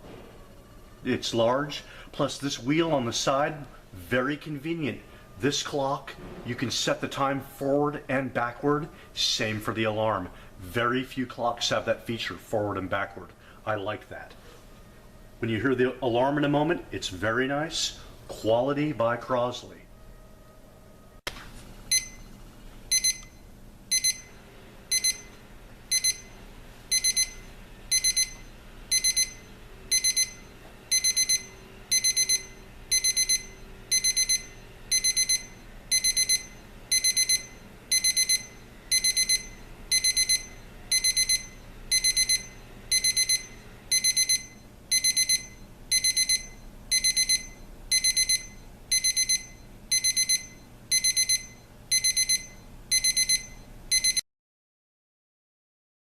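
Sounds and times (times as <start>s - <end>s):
alarm clock beeping: 21.9s - 22.3s, 22.9s - 54.2s.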